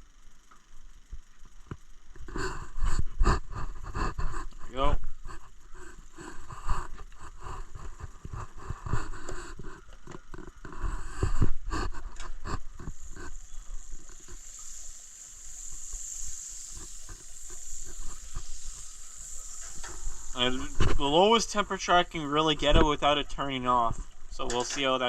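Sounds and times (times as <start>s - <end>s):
food sizzling in frying pan: 12.9s - 21.6s.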